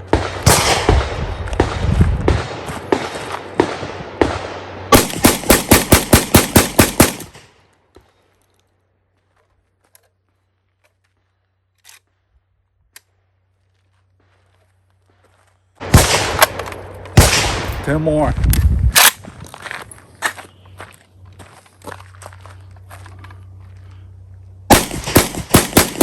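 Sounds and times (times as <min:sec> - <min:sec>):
shotgun firing: 0:00.1 - 0:07.4, 0:15.8 - 0:18.0, 0:24.7 - 0:26.0
faint distant gunshots: 0:00.1 - 0:07.5, 0:24.7 - 0:26.0.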